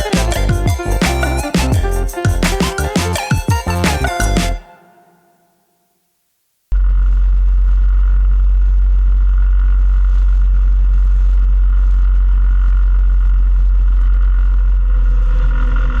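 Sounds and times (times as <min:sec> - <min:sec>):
engine running with deep rumble: 0:06.8 - 0:16.0.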